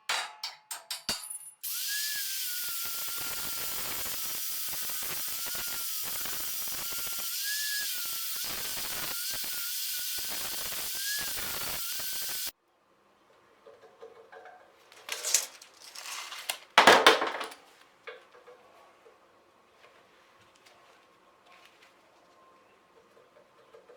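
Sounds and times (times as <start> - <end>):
electric power tool whining: 1.6 - 12.5
metal parts clanking: 15.0 - 16.6.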